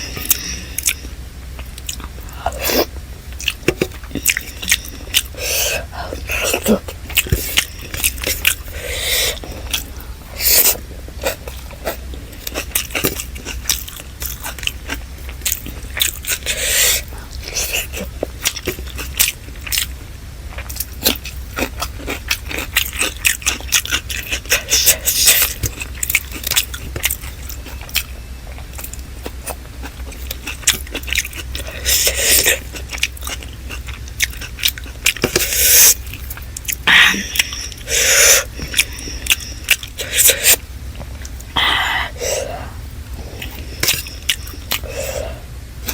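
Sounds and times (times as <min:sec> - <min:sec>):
steady low hum: 0:00.0 - 0:45.9
chewing and wet mouth clicks: 0:00.2 - 0:02.4, 0:17.4 - 0:37.8, 0:43.4 - 0:44.9.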